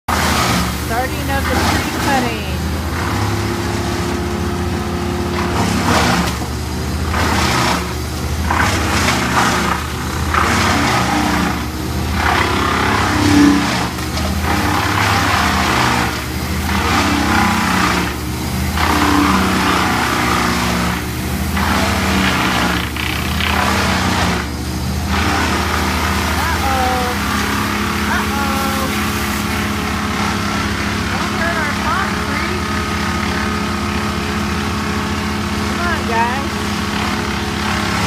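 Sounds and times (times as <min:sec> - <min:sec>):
tree-cutting engine running: 0:00.0 - 0:38.0
cutting surges: 0:00.1 - 0:38.0.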